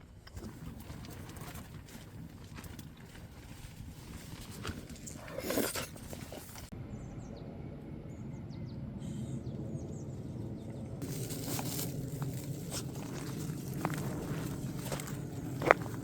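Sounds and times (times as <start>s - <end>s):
low rumble: 6.6s - 16.0s
footsteps: 11.0s - 16.0s.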